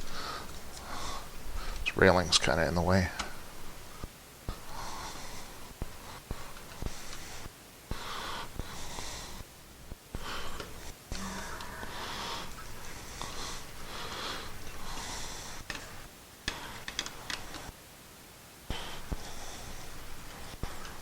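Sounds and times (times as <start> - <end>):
man breathing hard through nose: 0.0 - 1.9, 3.2 - 17.7, 18.7 - 21.0.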